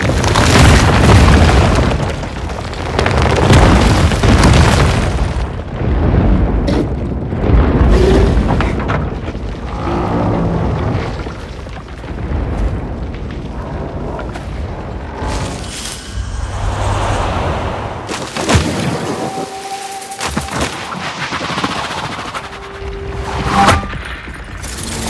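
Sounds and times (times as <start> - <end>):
deep cinematic rumbles and booms: 0.0 - 19.3.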